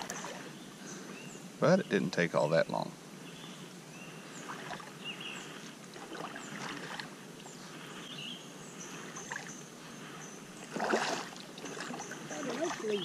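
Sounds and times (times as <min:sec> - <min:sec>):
kayak paddle strokes: 0:04.4 - 0:08.0.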